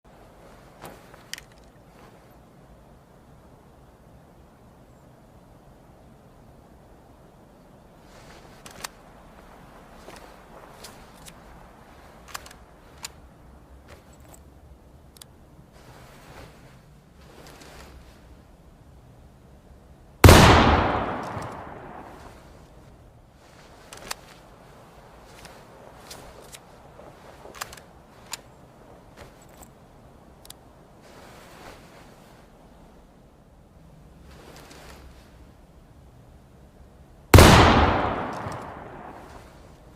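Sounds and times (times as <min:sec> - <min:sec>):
faint outdoor background: 0:00.0 - 0:39.9
soft hiss: 0:00.1 - 0:39.9
rifle clicks and knocks: 0:00.8 - 0:01.8, 0:08.6 - 0:09.0, 0:12.2 - 0:13.2, 0:20.4 - 0:22.4, 0:23.8 - 0:24.4, 0:25.3 - 0:26.7, 0:27.3 - 0:28.5, 0:37.5 - 0:39.6.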